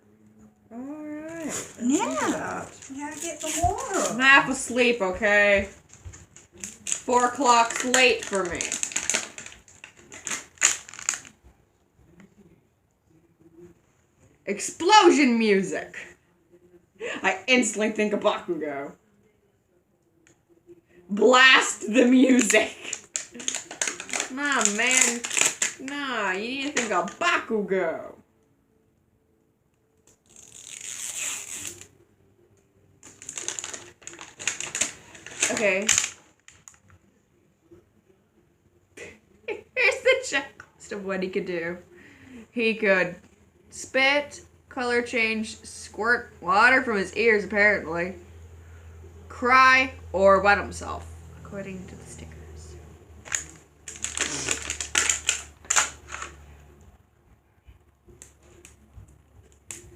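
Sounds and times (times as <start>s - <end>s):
plastic packaging crinkling and tearing: 1.4s - 4.3s, 5.7s - 11.4s, 21.6s - 27.2s, 30.0s - 31.9s, 33.0s - 37.0s, 53.2s - 56.4s.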